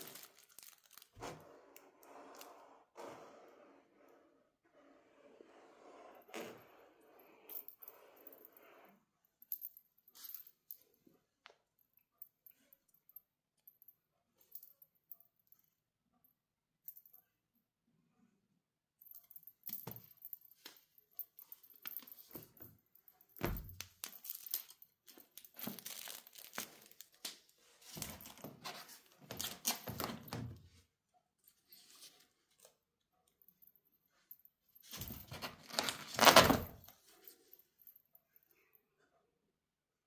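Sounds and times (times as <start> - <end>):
crinkly toy rustling: 0.0 - 1.2, 24.0 - 27.2.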